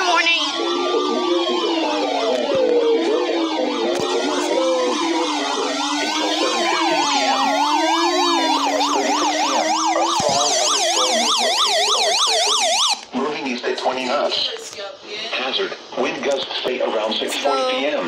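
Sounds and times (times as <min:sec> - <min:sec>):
emergency vehicle sirens wailing: 0:00.0 - 0:13.2.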